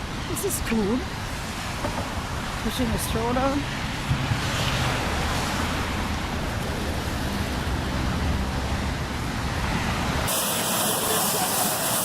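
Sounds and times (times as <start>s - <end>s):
wind rumble on microphone: 0.0s - 10.3s
road traffic roar: 0.0s - 12.0s
bright hiss: 10.3s - 12.0s.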